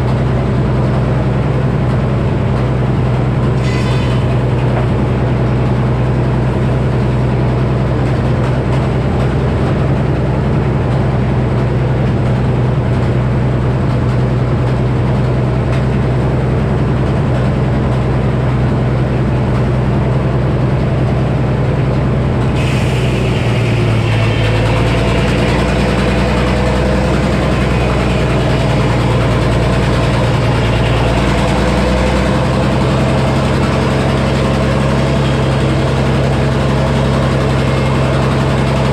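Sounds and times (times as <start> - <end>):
engine running with low hum: 0.0 - 38.9
high hiss: 22.6 - 29.2.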